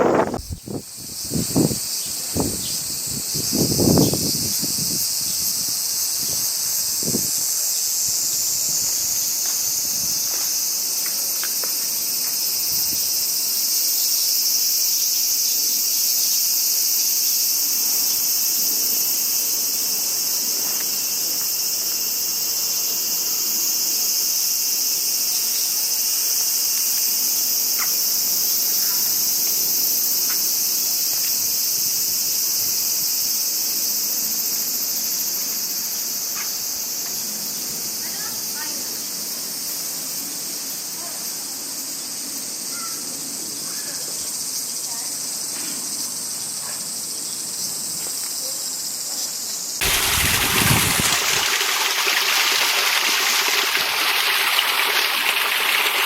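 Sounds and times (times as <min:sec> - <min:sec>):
wind buffeting microphone: 0:00.0 - 0:07.4, 0:49.8 - 0:51.6
crickets trilling: 0:00.0 - 0:56.0.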